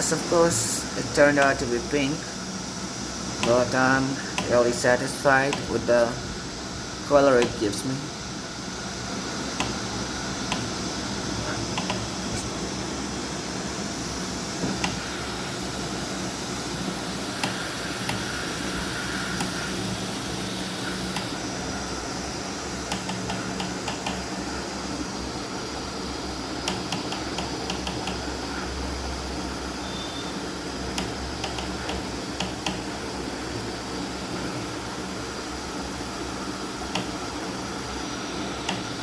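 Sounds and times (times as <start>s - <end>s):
printer fans and motors humming: 0.0s - 39.0s
print head clicks and ticks: 0.2s - 2.3s, 3.3s - 6.3s, 7.1s - 7.9s, 9.5s - 12.7s, 14.6s - 15.2s, 17.3s - 22.0s, 22.7s - 24.6s, 26.6s - 28.6s, 30.9s - 33.0s, 36.8s - 37.3s, 38.6s - 39.0s.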